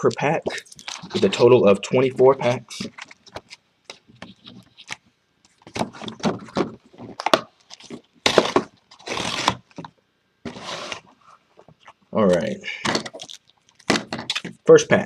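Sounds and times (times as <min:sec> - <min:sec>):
foil wrapper crinkling: 0:13.1 - 0:14.5.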